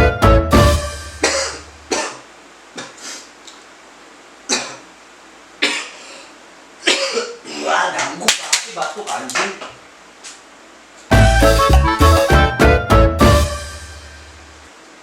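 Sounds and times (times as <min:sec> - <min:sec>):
person coughing: 0:01.2 - 0:03.2, 0:04.5 - 0:04.9, 0:05.6 - 0:07.7.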